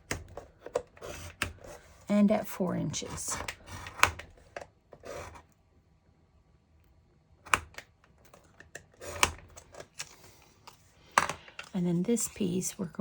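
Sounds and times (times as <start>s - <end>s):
scoring tool scraping: 0.6s - 4.0s, 4.9s - 5.5s.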